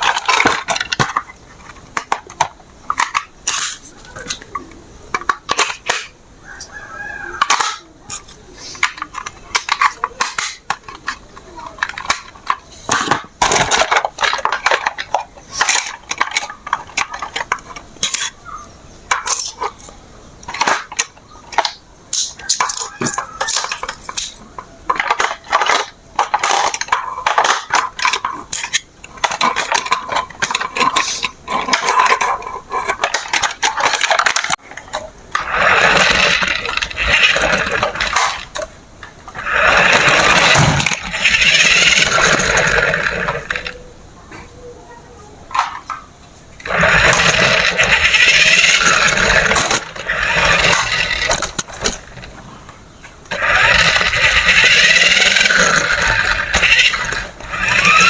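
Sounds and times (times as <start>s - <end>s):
plastic toy parts clattering: 0.0s - 43.8s, 45.4s - 58.0s
small toy motor whirring: 35.3s - 38.6s, 39.4s - 43.8s, 46.6s - 52.3s, 53.3s - 58.0s.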